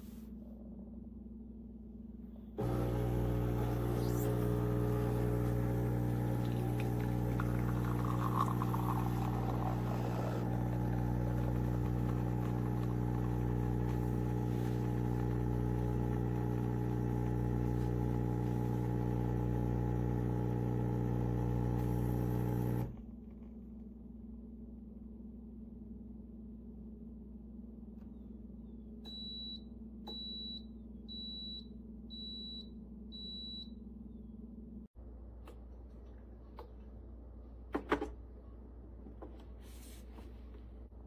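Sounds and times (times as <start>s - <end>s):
espresso machine pump humming: 2.6s - 23.0s.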